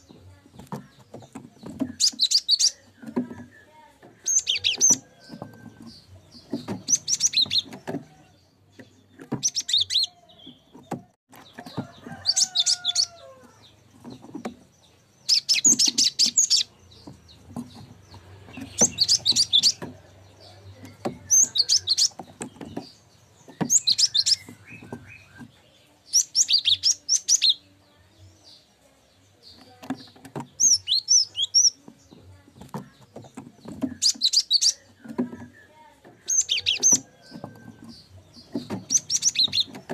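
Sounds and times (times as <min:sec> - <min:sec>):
bird rapid high chirps: 0:21.2 - 0:25.4.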